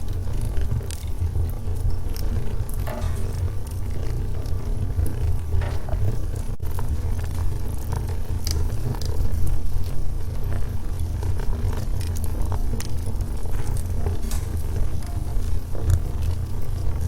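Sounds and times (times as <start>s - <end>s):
fire flames rumbling: 0.0s - 17.0s
logs crackling and popping: 0.0s - 17.0s.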